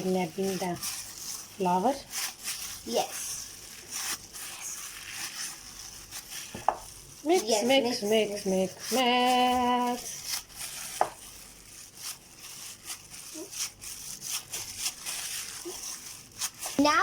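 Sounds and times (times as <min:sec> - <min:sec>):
person speaking: 0:00.0 - 0:02.2, 0:07.2 - 0:10.3, 0:16.7 - 0:17.0
play dough squishing and scraping: 0:00.0 - 0:17.0.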